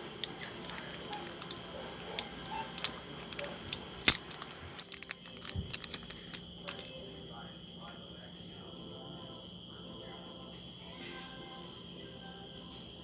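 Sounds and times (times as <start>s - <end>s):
faint electrical hum: 0.0s - 13.0s
cardboard and plastic clicks: 0.2s - 7.0s.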